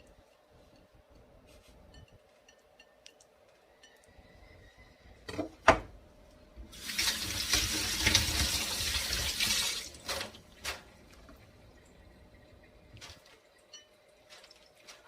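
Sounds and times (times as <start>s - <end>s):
tap water running into sink: 6.7s - 11.4s.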